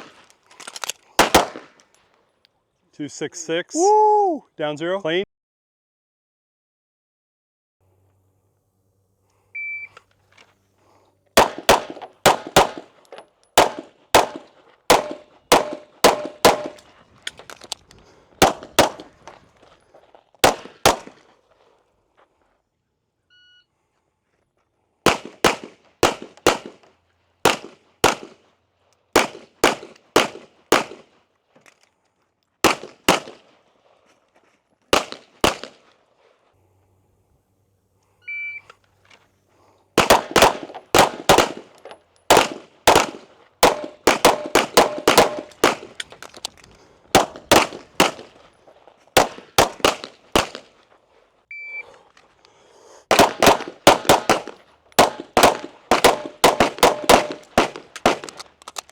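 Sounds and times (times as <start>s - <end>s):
handgun shots in quick pairs: 0.0s - 1.9s, 11.4s - 17.6s, 18.4s - 19.4s, 20.4s - 21.3s, 25.0s - 28.4s, 29.1s - 31.2s, 32.6s - 33.6s, 34.9s - 35.9s, 40.0s - 48.5s, 49.2s - 50.8s, 53.1s - 58.9s
shot timer beep: 9.6s - 10.0s, 38.3s - 38.7s, 51.5s - 51.9s.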